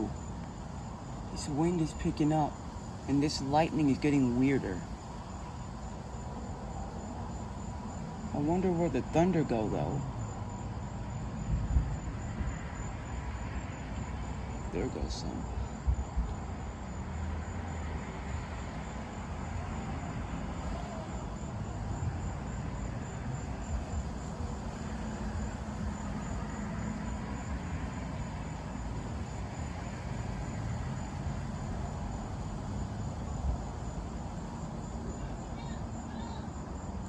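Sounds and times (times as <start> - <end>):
insects trilling: 0.0 - 37.0.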